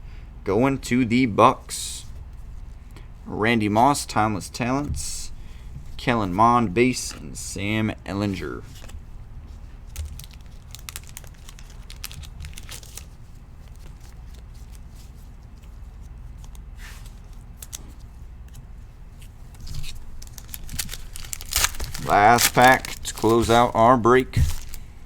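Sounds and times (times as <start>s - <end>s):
foil wrapper crinkling and tearing: 9.8s - 14.9s, 19.5s - 25.0s
cards crackling and clicking: 9.8s - 25.0s.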